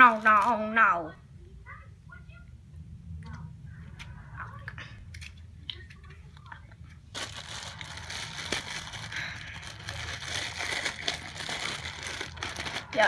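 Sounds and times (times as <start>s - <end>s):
plastic packaging crinkling: 0.0s - 0.8s, 7.1s - 13.0s.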